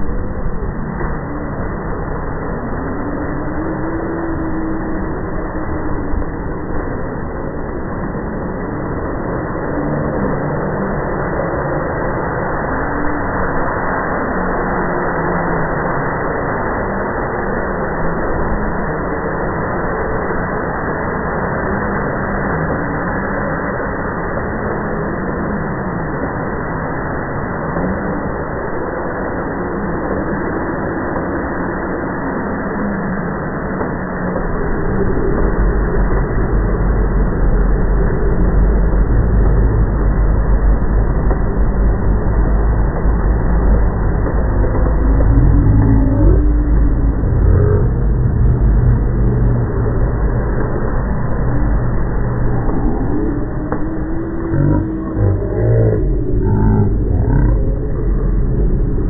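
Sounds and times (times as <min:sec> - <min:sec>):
rumbling drone: 0:00.0 - 0:59.0
wavering gliding tones: 0:29.3 - 0:59.0.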